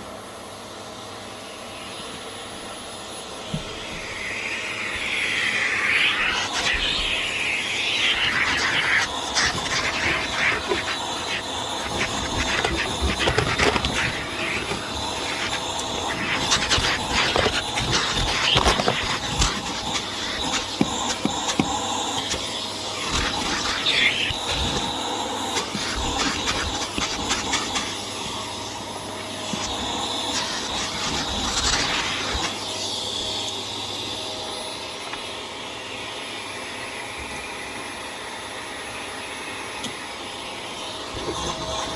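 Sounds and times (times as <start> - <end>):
vacuum cleaner running: 0.0 - 41.9.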